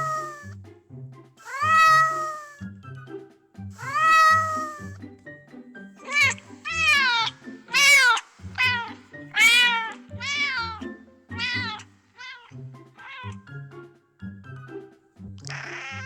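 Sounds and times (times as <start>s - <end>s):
cats meowing: 0.0s - 0.5s, 1.4s - 2.6s, 3.8s - 5.0s, 6.0s - 13.4s, 15.4s - 16.0s
background music: 0.0s - 16.0s.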